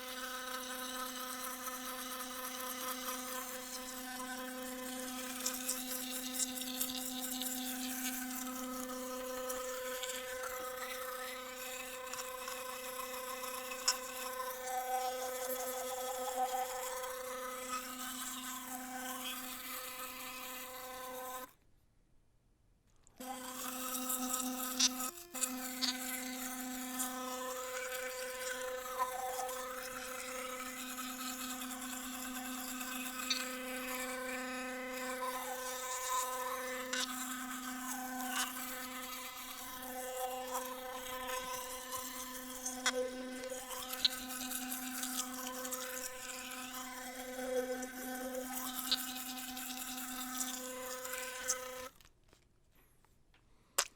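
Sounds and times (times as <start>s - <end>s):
electric toothbrush buzzing: 0.0s - 21.5s, 23.2s - 52.1s
teeth scrubbing noises: 35.2s - 52.0s.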